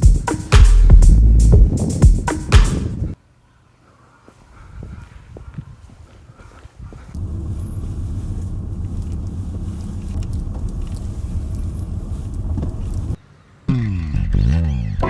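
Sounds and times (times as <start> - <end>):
car engine idling: 7.2 - 13.2.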